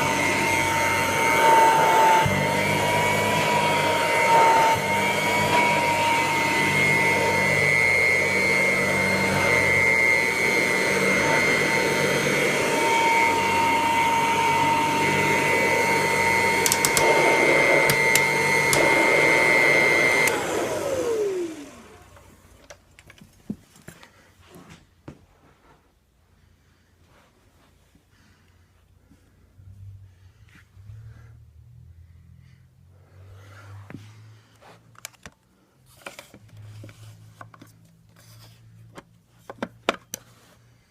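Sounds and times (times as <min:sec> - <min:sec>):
vacuum cleaner whining: 0:00.0 - 0:22.8.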